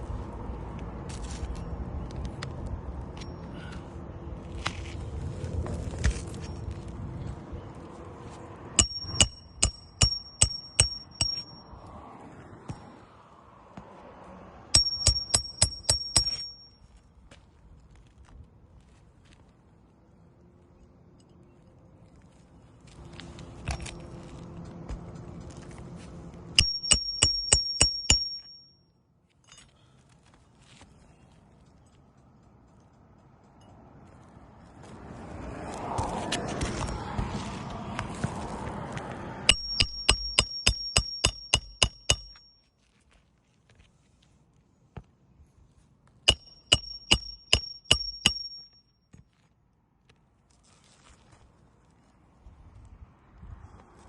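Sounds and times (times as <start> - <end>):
metallic strikes with high ringing: 8.8 - 11.8, 14.8 - 16.8, 26.6 - 28.8, 39.5 - 42.6, 46.3 - 48.9.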